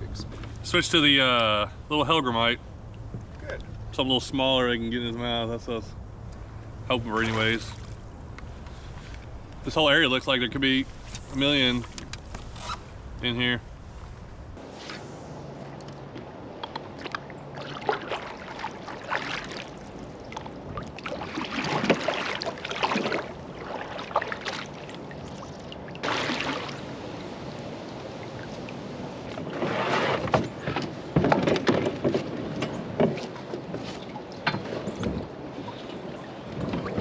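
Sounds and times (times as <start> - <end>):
paddle strokes splashing water: 6.2 - 37.0.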